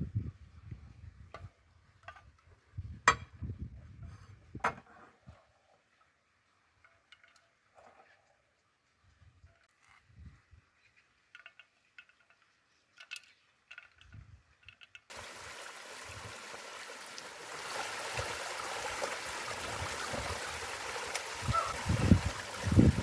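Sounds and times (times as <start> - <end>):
running water rushing: 15.1 - 23.0.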